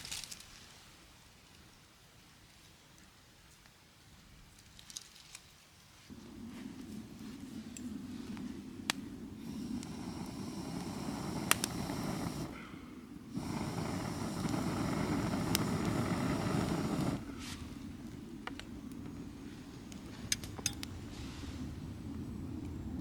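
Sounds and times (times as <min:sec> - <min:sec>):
rushing air: 0:06.1 - 0:20.2
fire crackling pops: 0:06.1 - 0:21.1.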